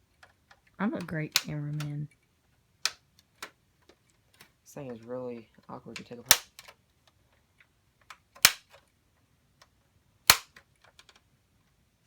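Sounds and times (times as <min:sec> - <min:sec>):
plastic clicks and ticks: 0:00.0 - 0:02.2, 0:02.8 - 0:09.0, 0:09.6 - 0:11.8
plastic latch tabs snapping: 0:06.3 - 0:06.7, 0:10.3 - 0:11.2.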